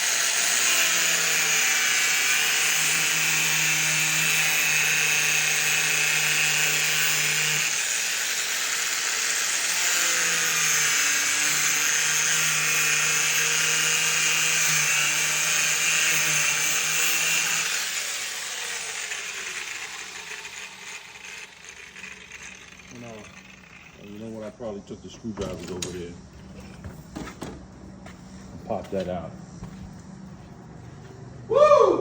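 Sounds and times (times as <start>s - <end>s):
power tool cutting plastic: 0.0s - 24.5s.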